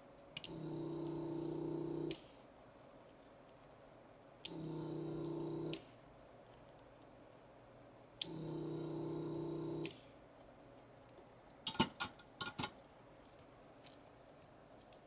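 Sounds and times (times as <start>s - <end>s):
vacuum pump buzzing hum: 0.0s - 2.5s, 4.4s - 6.2s, 7.7s - 10.3s.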